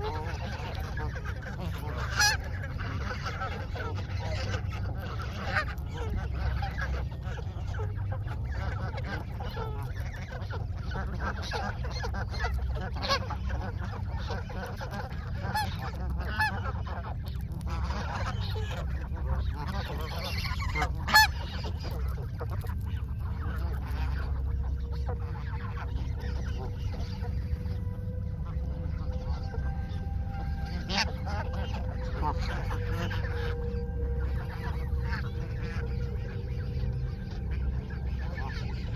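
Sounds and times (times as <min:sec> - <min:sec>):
geese honking: 0:00.0 - 0:38.9
steady low rumble: 0:00.0 - 0:38.9.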